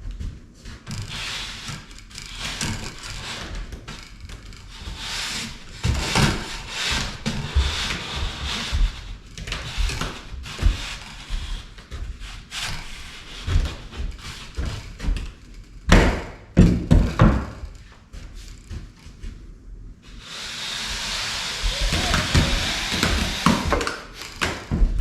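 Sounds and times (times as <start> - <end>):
scraper scraping ceiling: 0.6 - 15.1, 20.0 - 24.6.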